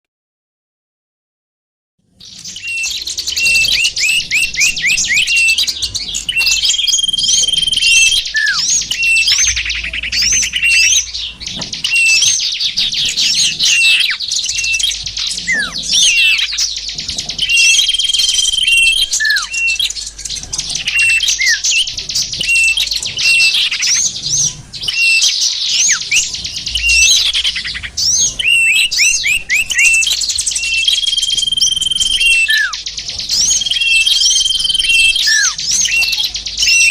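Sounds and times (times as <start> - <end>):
small birds chirping and twittering: 2.0 - 36.9
short held whistles: 6.3 - 11.1, 28.4 - 32.8.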